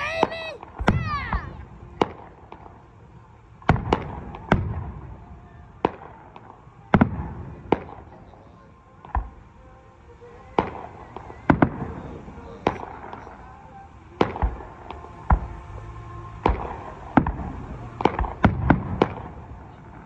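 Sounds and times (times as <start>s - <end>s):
fireworks bangs with rumbling echo: 0.0s - 20.0s.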